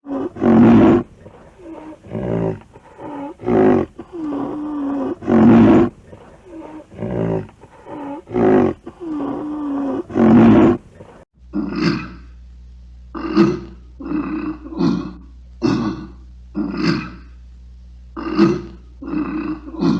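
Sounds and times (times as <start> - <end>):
rhinoceros calling: 0.0 - 12.2
steady low hum: 0.0 - 19.9.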